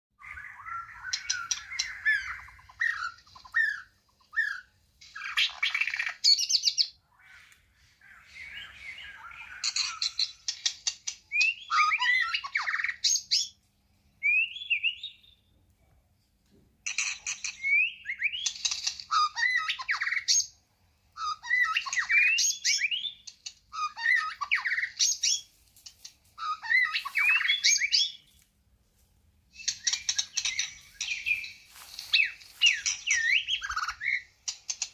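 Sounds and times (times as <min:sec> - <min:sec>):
bird singing whistles and chatter: 0:00.2 - 0:07.0, 0:08.1 - 0:13.6, 0:16.9 - 0:20.5, 0:21.2 - 0:25.5, 0:26.4 - 0:28.4, 0:29.6 - 0:34.9.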